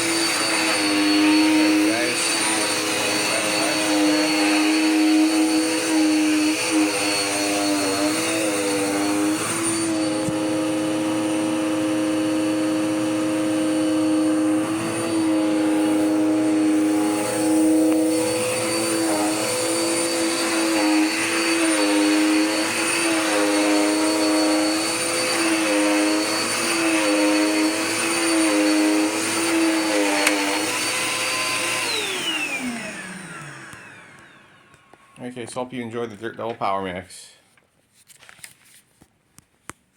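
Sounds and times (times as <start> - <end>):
vacuum cleaner motor whine: 0.0 - 35.5.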